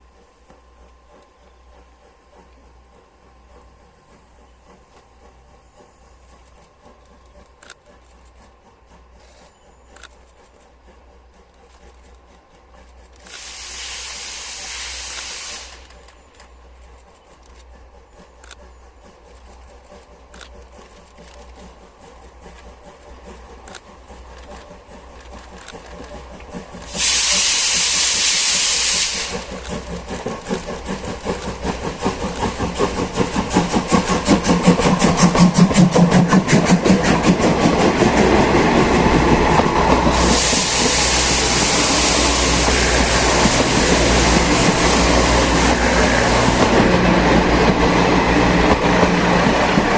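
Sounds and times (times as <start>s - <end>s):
steam locomotive exhaust beats: 0.0s - 49.9s
steam whistle blasts: 13.4s - 15.8s.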